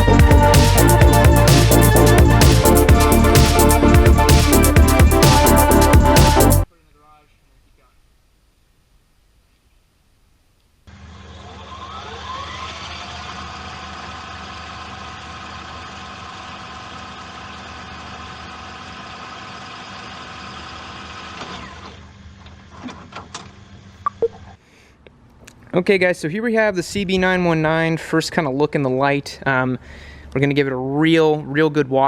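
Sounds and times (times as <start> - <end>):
motor humming: 0.0 - 6.6, 10.9 - 22.8.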